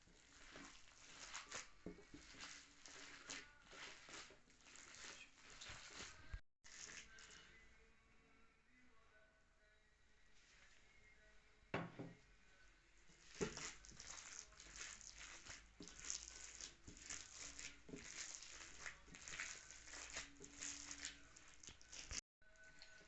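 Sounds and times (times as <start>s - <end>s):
food crackling and patting: 0.0s - 7.4s, 13.1s - 22.2s.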